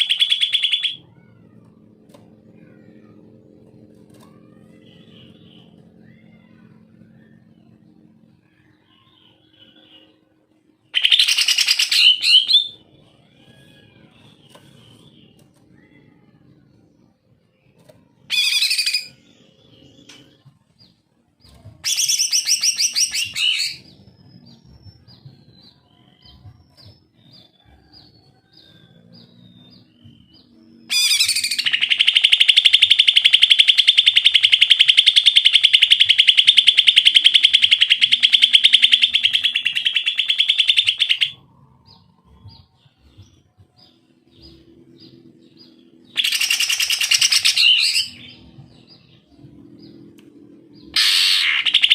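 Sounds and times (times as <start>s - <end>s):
bird singing rapid notes: 0.0s - 1.6s, 3.8s - 16.7s, 17.6s - 51.9s
faint bird chirps: 0.0s - 51.9s
bird fast rattling trill: 30.9s - 41.4s, 46.2s - 48.2s, 51.0s - 51.9s.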